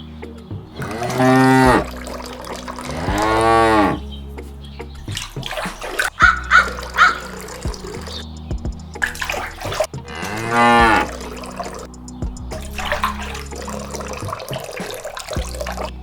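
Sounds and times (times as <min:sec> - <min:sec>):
cow mooing: 0:02.8 - 0:04.0, 0:10.1 - 0:11.4.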